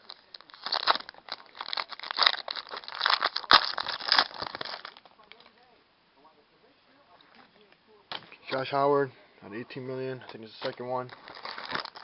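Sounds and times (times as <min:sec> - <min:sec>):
wrapper crinkling: 0:00.0 - 0:05.2, 0:10.3 - 0:12.0.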